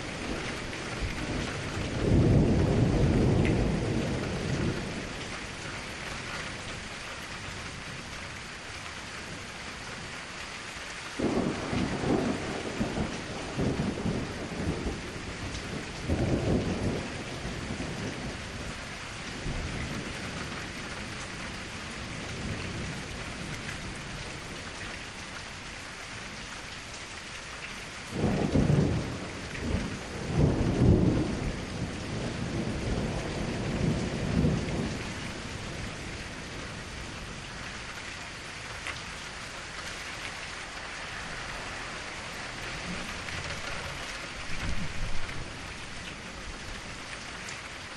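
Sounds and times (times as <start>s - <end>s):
thunder rumbling: 0.0s - 5.6s, 11.2s - 20.9s, 28.1s - 38.6s, 40.4s - 47.8s
steady rain hissing: 0.0s - 47.9s.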